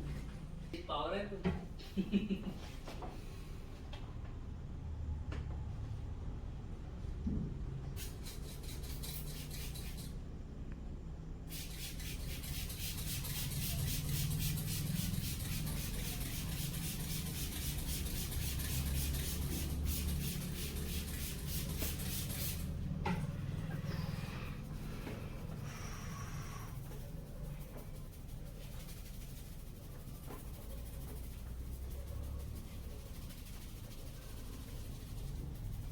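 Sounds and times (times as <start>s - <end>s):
rubbing strokes on hair: 11.5s - 22.8s, 23.4s - 35.9s.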